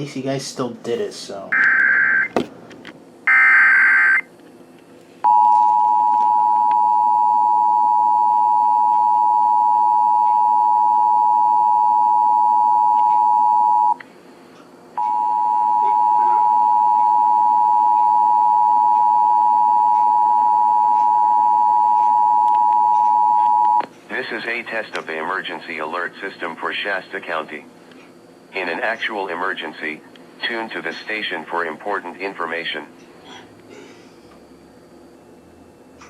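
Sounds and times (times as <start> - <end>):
two-tone attention signal: 15.0 - 23.8.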